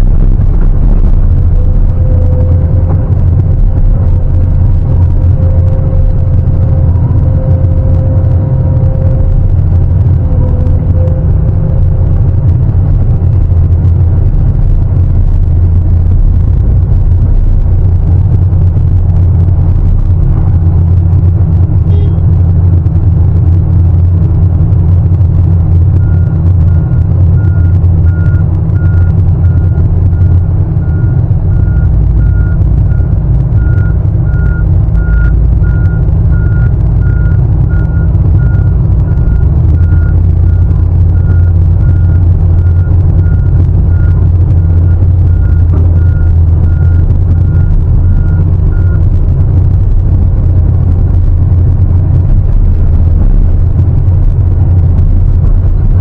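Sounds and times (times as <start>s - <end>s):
heavy diesel machinery droning: 0.0s - 56.0s
reversing alarm beeping: 25.8s - 49.5s.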